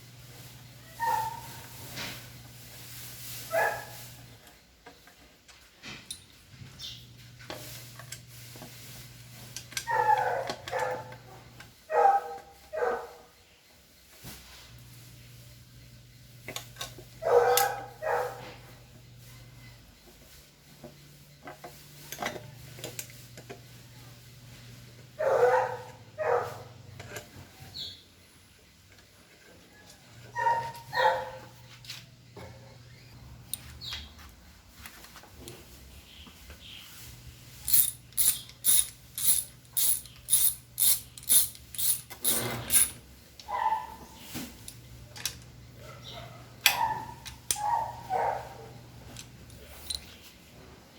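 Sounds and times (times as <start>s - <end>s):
dog barking: 1.0s - 1.6s, 3.5s - 4.0s, 9.9s - 11.2s, 11.9s - 13.3s, 17.2s - 18.6s, 25.2s - 26.7s, 30.4s - 31.6s, 43.5s - 44.2s, 45.8s - 48.8s.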